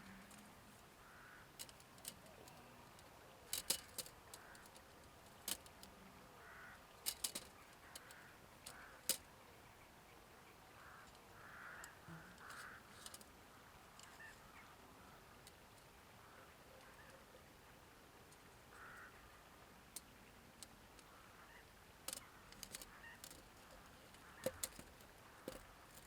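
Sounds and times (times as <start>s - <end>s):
sharp clicks: 24.4s - 26.0s.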